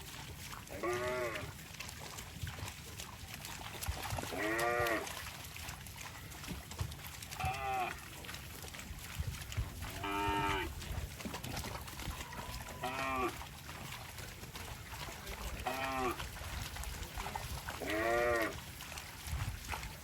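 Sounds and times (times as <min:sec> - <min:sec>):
cattle mooing: 0:00.7 - 0:01.4, 0:04.3 - 0:05.1, 0:07.4 - 0:08.0, 0:09.9 - 0:10.7, 0:12.3 - 0:13.4, 0:15.6 - 0:16.2, 0:17.8 - 0:18.6.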